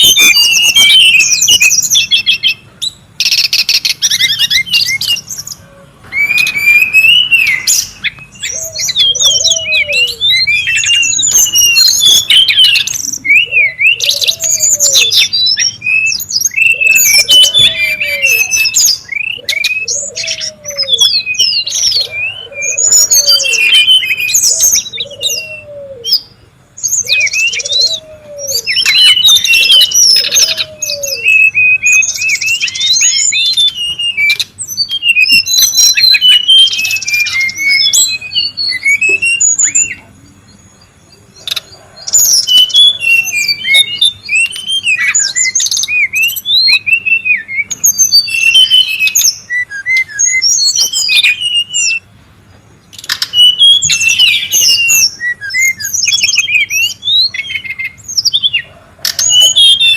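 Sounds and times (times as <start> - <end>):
bird chirping and twittering: 0.0 - 59.9.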